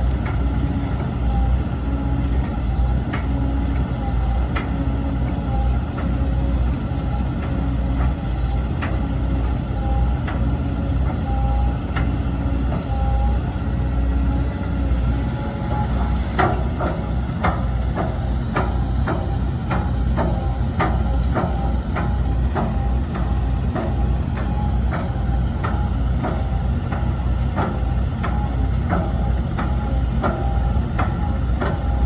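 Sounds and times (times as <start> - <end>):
excavator diesel engine running: 0.0 - 32.0
hydraulics whining: 0.0 - 32.0.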